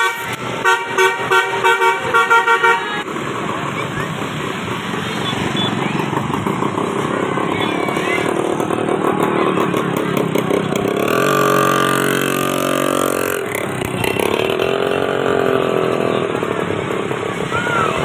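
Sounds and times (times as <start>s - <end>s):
bus horn steady tone: 0.0s - 3.0s
engines running: 0.0s - 18.0s.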